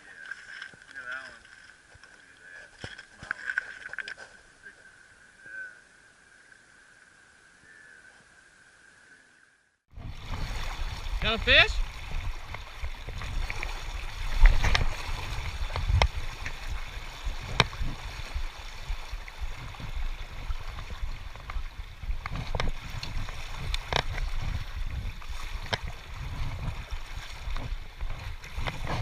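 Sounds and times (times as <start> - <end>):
creek water running: 0.0 - 8.4, 9.9 - 29.0
wind rumble on microphone: 9.9 - 29.0.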